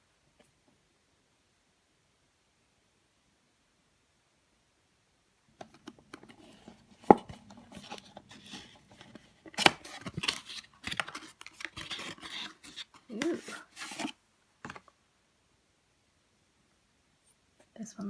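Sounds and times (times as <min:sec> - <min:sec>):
packaging being opened by hand: 0:05.7 - 0:14.8.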